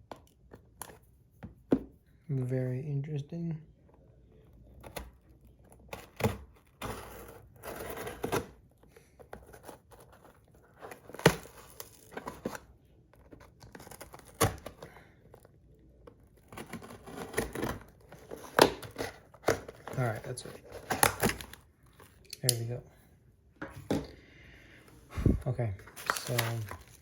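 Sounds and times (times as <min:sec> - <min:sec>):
packaging being torn and crinkled: 0:10.0 - 0:12.6, 0:16.4 - 0:22.2, 0:25.9 - 0:27.0.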